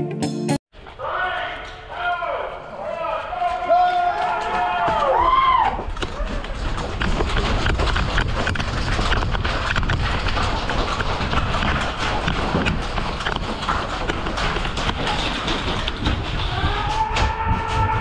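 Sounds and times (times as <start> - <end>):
footsteps: 0.8 - 18.0
gear clattering: 5.8 - 18.0.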